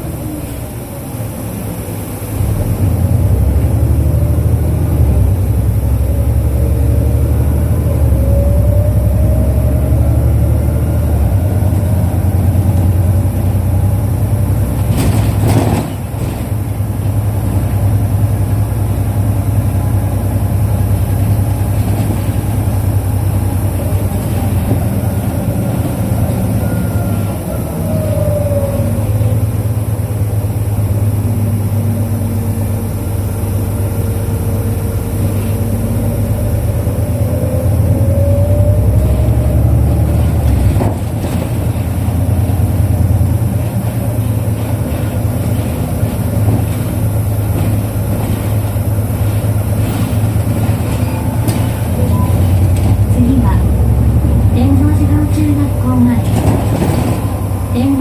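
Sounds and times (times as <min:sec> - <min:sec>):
bus engine drone: 0:00.0 - 0:58.0
faint rising whines: 0:05.1 - 0:14.0.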